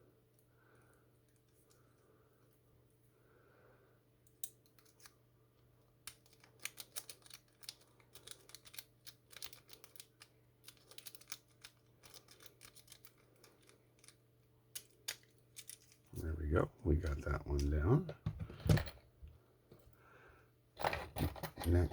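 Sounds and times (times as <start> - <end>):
lock pick clicking and scraping: 6.1 - 16.1, 20.8 - 21.9.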